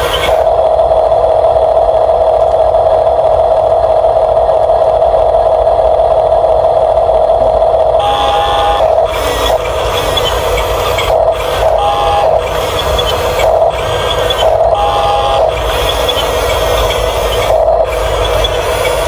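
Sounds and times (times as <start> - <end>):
electric motor and gearbox whining: 0.0 - 0.6, 8.0 - 19.0.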